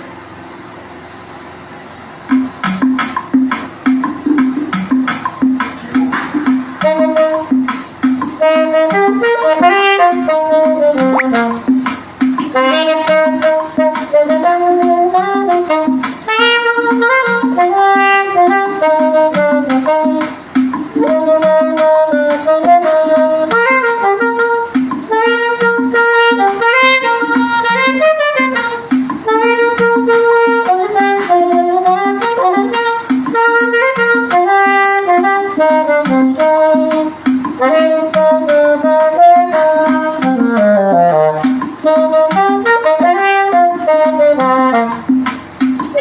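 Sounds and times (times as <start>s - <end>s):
low pulsing accompaniment: 5.8s - 26.0s
saxophone playing hymn melody: 6.4s - 46.0s.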